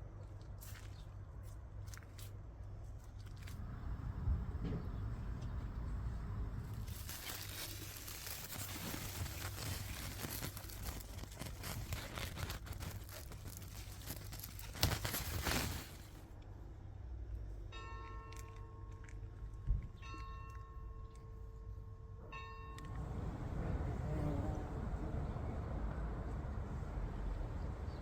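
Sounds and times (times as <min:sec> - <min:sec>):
leaves rustling and crackling: 0:06.6 - 0:16.3.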